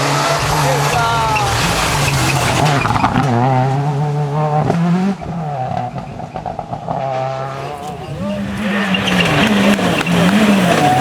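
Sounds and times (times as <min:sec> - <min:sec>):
rally car engine running hard: 0:00.0 - 0:11.0
sharp exhaust pops: 0:04.6 - 0:11.0.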